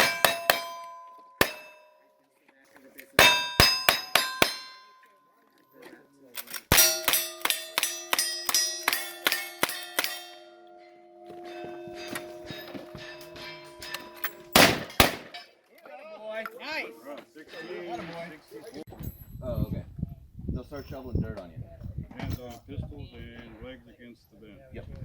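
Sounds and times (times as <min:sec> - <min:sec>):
gunshots hitting steel targets: 0:00.0 - 0:01.9, 0:03.2 - 0:05.0, 0:06.4 - 0:10.6, 0:11.3 - 0:15.5
steel plates ringing: 0:00.0 - 0:02.1, 0:03.2 - 0:05.4, 0:06.4 - 0:15.5.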